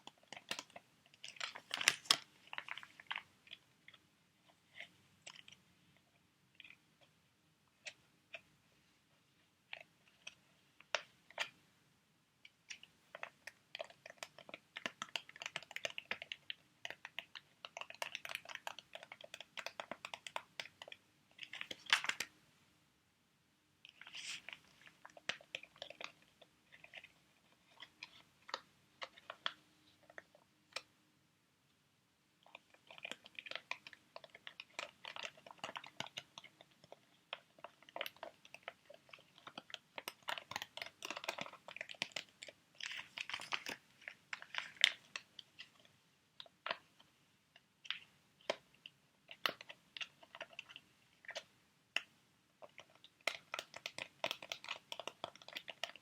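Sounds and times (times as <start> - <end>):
plastic packets crinkling: 0.1 - 3.6, 32.5 - 45.9, 52.7 - 56.0.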